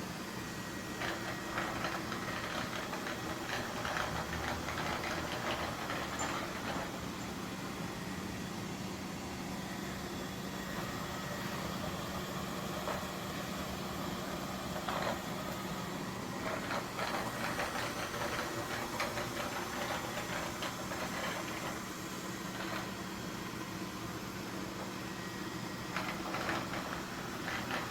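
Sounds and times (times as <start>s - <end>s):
robot vacuum motor hum: 0.5s - 8.4s, 9.9s - 27.9s
rapid clicking and rattling: 0.9s - 7.4s, 14.4s - 23.4s, 25.8s - 27.9s.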